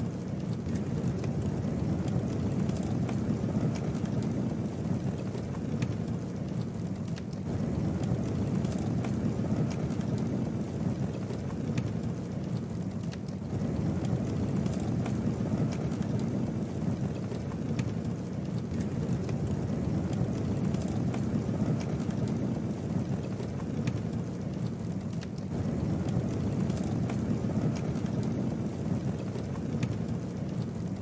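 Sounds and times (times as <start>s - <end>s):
low rumble of flames: 0.0s - 31.0s
wood crackling and popping: 0.0s - 31.0s.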